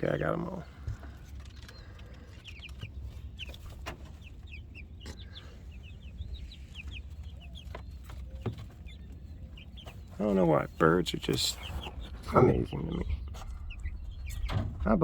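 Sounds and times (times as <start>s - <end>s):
chickens chirping and clucking: 0.0s - 15.0s
low rumble: 12.0s - 15.0s.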